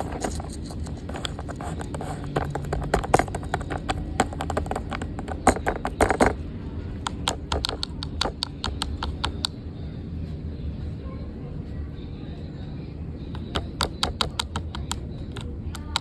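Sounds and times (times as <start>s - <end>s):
fidget toys clicking and tapping: 0.0s - 6.4s, 7.0s - 9.5s, 13.4s - 16.0s
steady low hum: 0.0s - 16.0s.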